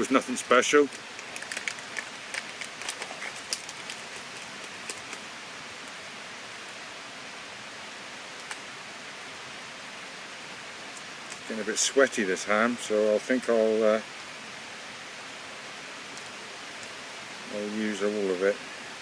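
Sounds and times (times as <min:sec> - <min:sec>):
light rustles and clicks: 0:00.9 - 0:05.3.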